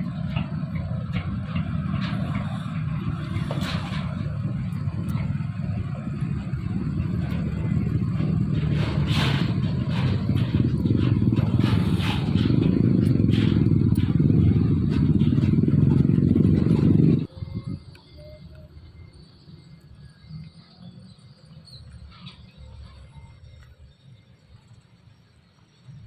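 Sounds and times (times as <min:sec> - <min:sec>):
clanks and rattles: 0:00.0 - 0:17.3
heavy truck engine rumbling: 0:00.0 - 0:26.0.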